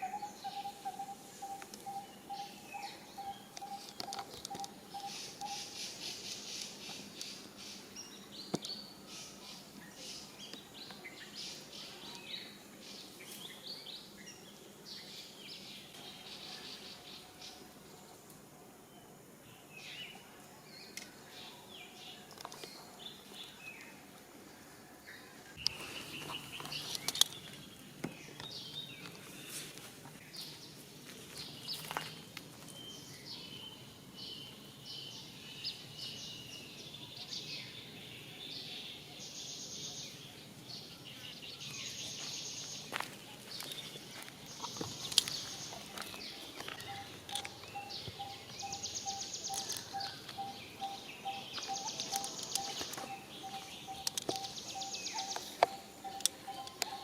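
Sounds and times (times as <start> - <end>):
birds calling: 0.0 - 17.8, 24.9 - 30.7, 40.8 - 57.0
clicks and rustles: 3.8 - 4.7, 25.6 - 30.2.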